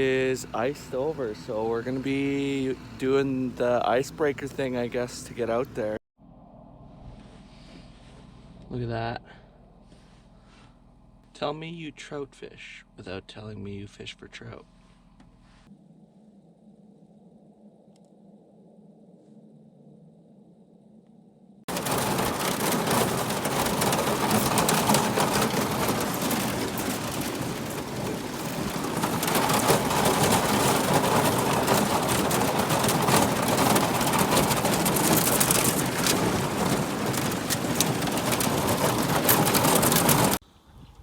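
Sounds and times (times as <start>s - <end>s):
boat hull breaking thin ice: 21.7s - 40.4s.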